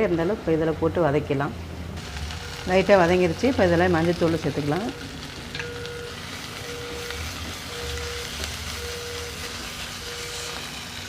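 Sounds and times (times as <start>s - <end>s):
paste sizzling in oil: 2.0s - 5.5s, 6.1s - 11.0s.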